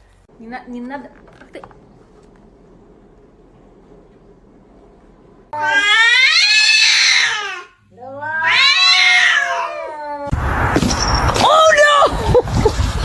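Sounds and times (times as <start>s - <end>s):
cat yowling: 5.6s - 10.3s.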